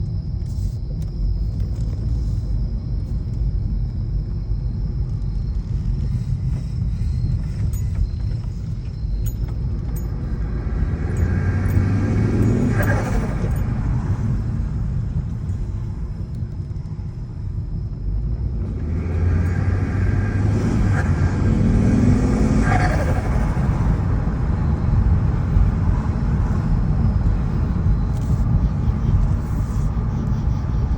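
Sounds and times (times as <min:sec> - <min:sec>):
car engine revving: 0:09.2 - 0:15.6, 0:18.3 - 0:30.2.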